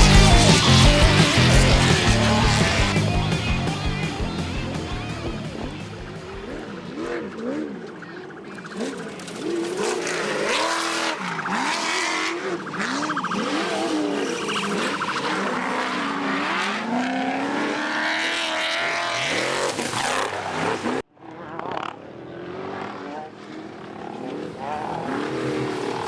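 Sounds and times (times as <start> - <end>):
second engine: 0.0 - 18.8
race vehicle engine revving: 0.0 - 21.5.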